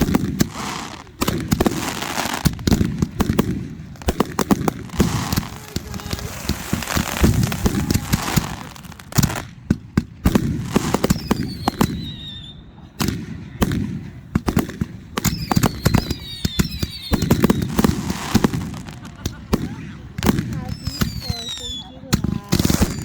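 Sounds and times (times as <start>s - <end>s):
fireworks bangs and crackles: 0.0s - 23.0s
firework whistles: 4.9s - 9.4s, 10.6s - 12.7s, 15.2s - 19.0s, 19.6s - 23.0s.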